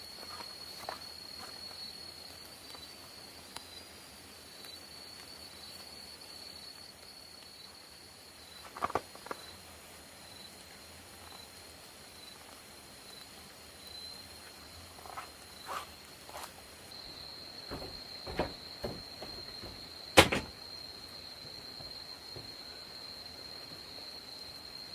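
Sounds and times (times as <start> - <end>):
short knocks: 17.7 - 20.6.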